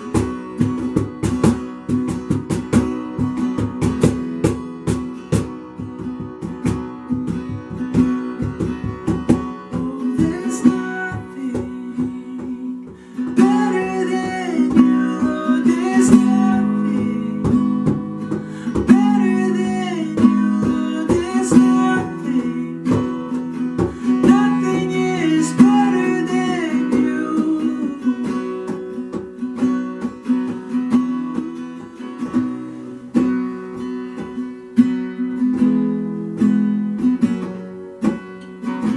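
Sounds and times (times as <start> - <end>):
acoustic guitar strumming: 0.0 - 38.9
person singing: 9.2 - 29.0.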